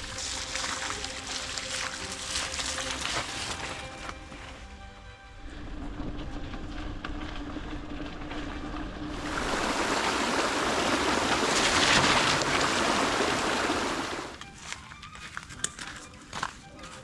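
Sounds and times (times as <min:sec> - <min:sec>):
rushing water roar: 0:09.1 - 0:14.4.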